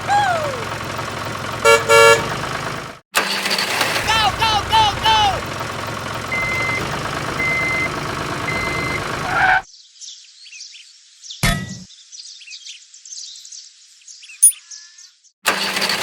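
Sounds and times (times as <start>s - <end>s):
machine engine noise: 0.0s - 9.6s, 15.5s - 16.0s
reversing alarm beeps: 7.4s - 7.9s, 8.5s - 9.0s
birds chirping: 7.4s - 15.3s.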